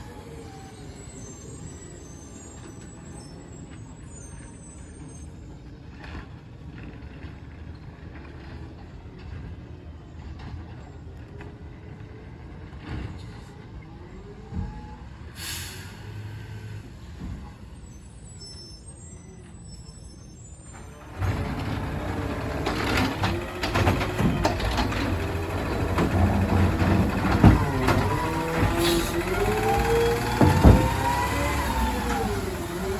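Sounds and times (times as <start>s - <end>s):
air brake hiss: 15.4s - 17.2s, 28.8s - 29.3s
faint high beeps: 17.7s - 21.1s
garbage truck engine revving: 20.8s - 32.9s.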